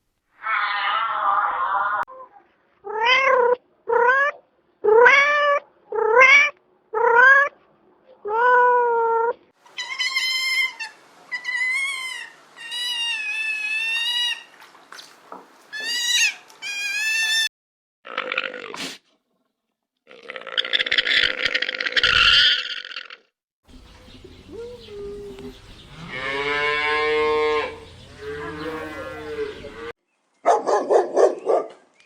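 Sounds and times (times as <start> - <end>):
cat meowing: 2.8 - 7.5.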